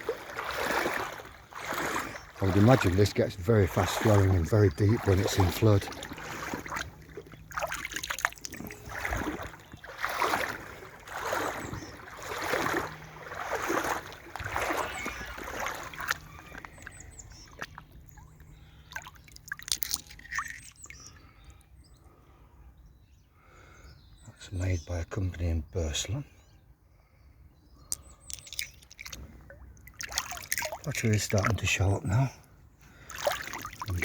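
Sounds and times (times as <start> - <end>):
boots wading through water: 0.0 - 21.2, 28.2 - 34.0
birds chirping faintly: 0.0 - 34.0.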